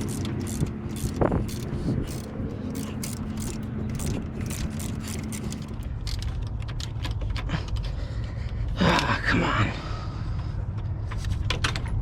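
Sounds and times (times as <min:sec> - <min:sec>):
ratchet wrench clicking: 0:00.0 - 0:06.3
steady low hum: 0:00.0 - 0:12.0.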